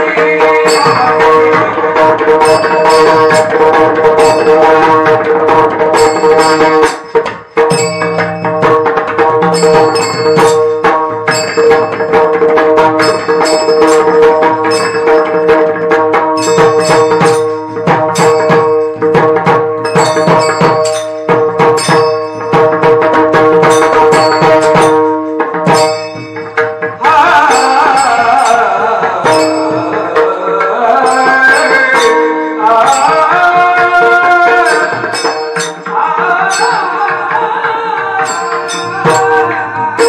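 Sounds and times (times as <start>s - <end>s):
drum strokes: 0.0s - 40.0s
small hand cymbals ringing: 0.6s - 5.2s, 6.0s - 26.8s, 27.4s - 30.3s, 31.0s - 40.0s.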